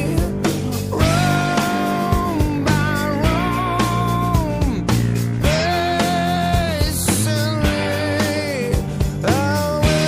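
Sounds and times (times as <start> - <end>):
rock music: 0.0 - 10.0.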